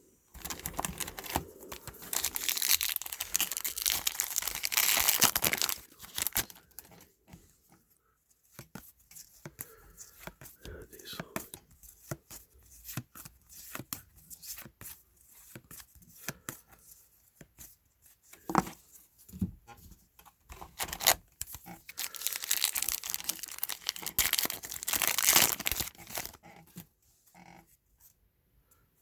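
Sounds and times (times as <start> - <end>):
wrapper tearing and crinkling: 0.4 - 6.9, 20.7 - 26.4
trading cards clicking and rustling: 0.4 - 7.0, 20.6 - 26.4.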